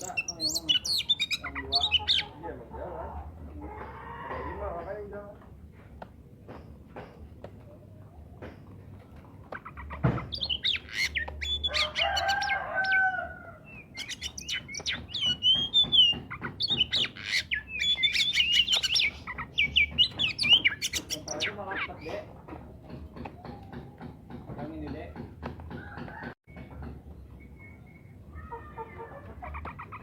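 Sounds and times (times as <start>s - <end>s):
bird song with whistled phrases: 10.3s - 13.0s, 13.6s - 22.1s, 26.5s - 28.5s.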